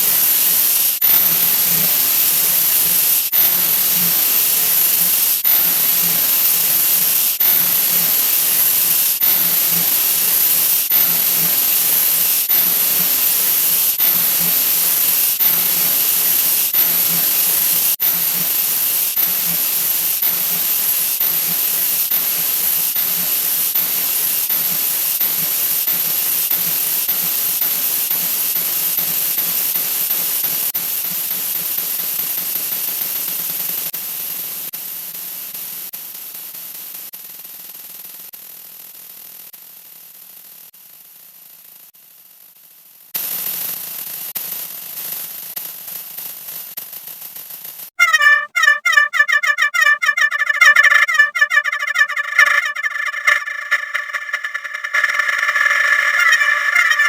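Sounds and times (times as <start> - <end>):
loop restart clicks: 48.0 - 57.0
sped-up high hiss: 50.0 - 57.0.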